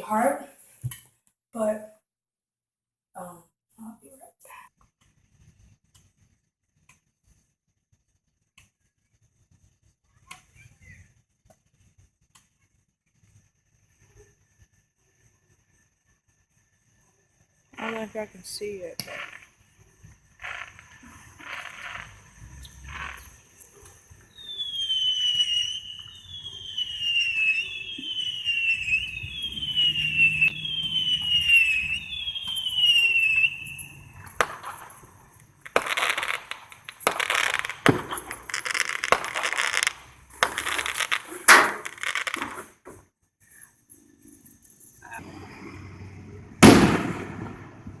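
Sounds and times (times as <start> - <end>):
fireworks hissing and crackling: 8.7 - 43.0, 45.0 - 48.0
firework bangs: 17.8 - 42.8, 46.3 - 48.0
firework falling whistle: 19.0 - 19.7, 20.3 - 42.6, 46.6 - 48.0.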